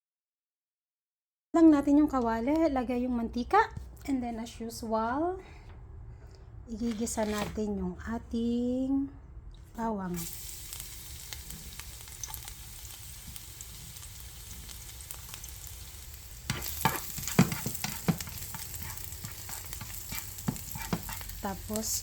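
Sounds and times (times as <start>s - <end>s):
garlic sizzling in a frying pan: 10.2s - 22.0s
utensil stirring in a pan: 10.2s - 22.0s.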